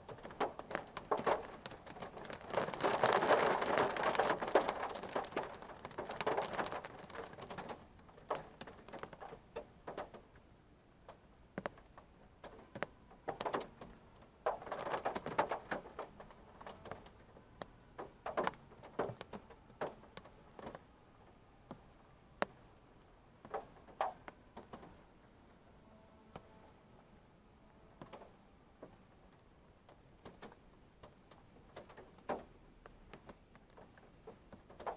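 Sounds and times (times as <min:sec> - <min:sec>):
rain drops tapping on a car: 0:00.0 - 0:22.7, 0:23.4 - 0:25.1, 0:28.0 - 0:34.9.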